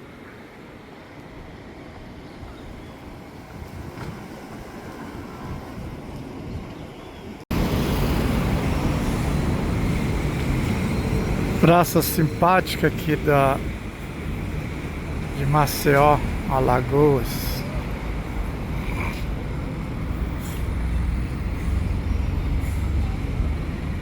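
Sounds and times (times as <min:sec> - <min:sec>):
street traffic noise: 0:00.0 - 0:24.0.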